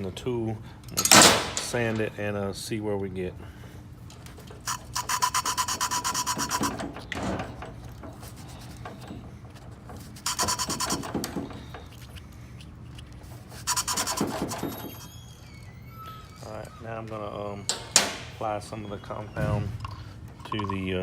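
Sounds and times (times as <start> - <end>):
gritty rasping of valve lapping: 4.5 - 7.1, 7.8 - 21.0.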